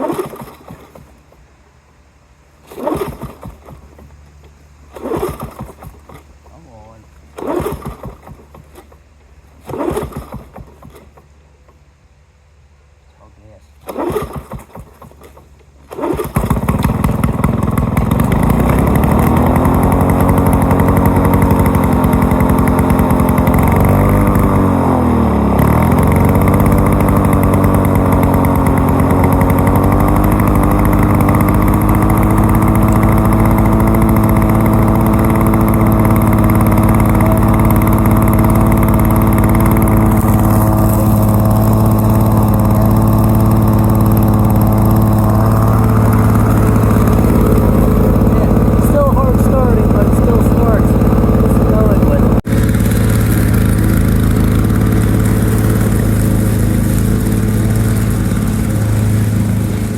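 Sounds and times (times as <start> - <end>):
lawn mower engine running: 0.0 - 13.1, 13.7 - 59.9.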